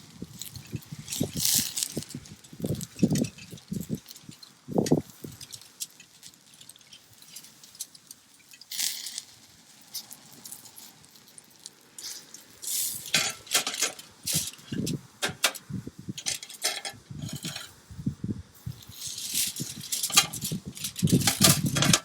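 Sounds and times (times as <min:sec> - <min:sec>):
metal cookware clinking: 0:13.1 - 0:15.6, 0:16.2 - 0:17.7, 0:19.5 - 0:22.0.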